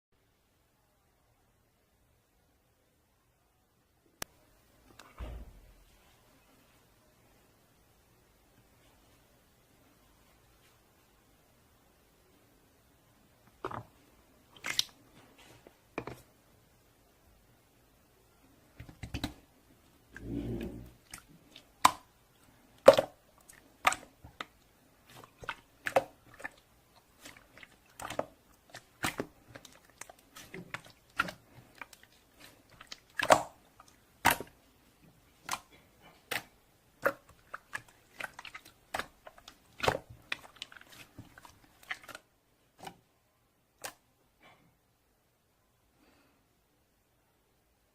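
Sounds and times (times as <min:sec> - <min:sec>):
slime squishing with wet clicks: 0:13.5 - 0:15.0, 0:18.8 - 0:19.5, 0:20.2 - 0:43.1, 0:43.7 - 0:44.1.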